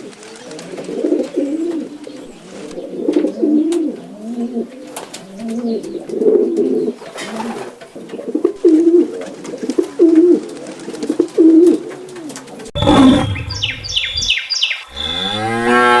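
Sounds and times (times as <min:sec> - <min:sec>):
pigeon cooing: 0:00.0 - 0:15.4
quick high falling chirps: 0:12.8 - 0:15.4.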